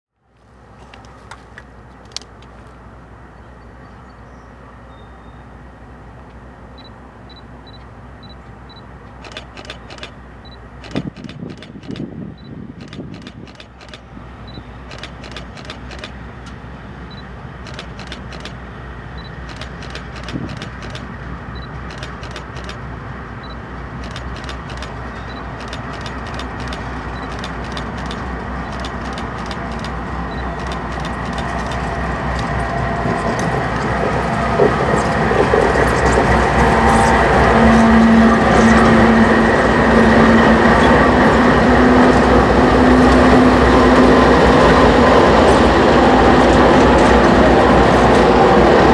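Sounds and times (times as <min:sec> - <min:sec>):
train rumbling: 0:00.4 - 0:48.9
clicks: 0:14.9 - 0:16.6.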